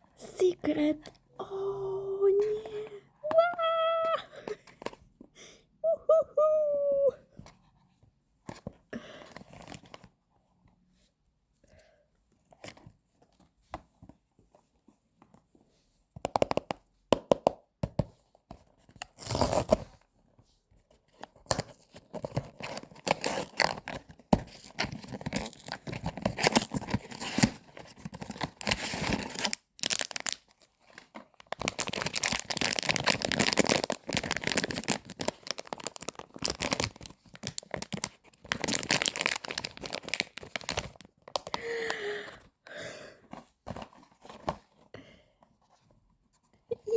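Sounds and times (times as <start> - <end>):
packaging tearing: 19.0 - 19.8, 24.5 - 41.6
packaging crinkling: 22.1 - 41.7.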